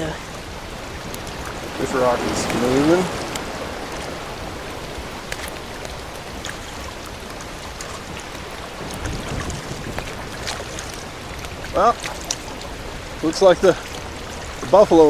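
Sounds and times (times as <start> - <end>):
small clicks and drips: 0.0 - 15.0
water lapping against rocks: 0.0 - 15.0.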